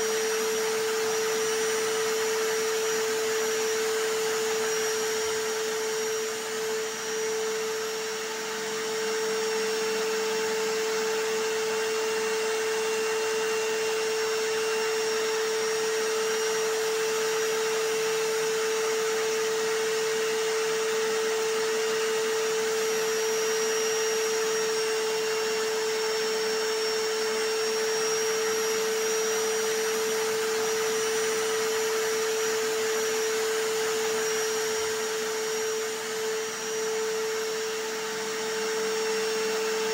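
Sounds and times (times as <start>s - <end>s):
vacuum cleaner whoosh: 0.0s - 13.2s, 24.8s - 39.9s
hammer drill: 0.0s - 39.9s.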